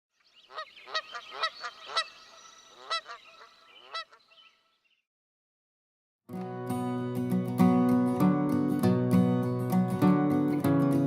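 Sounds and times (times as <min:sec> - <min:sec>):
bird calling sharply: 0:00.2 - 0:05.0.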